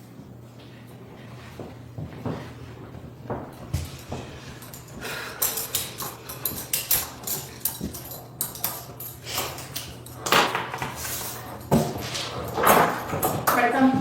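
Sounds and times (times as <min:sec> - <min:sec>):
metal handcuffs clinking and clicking: 0:04.5 - 0:10.4.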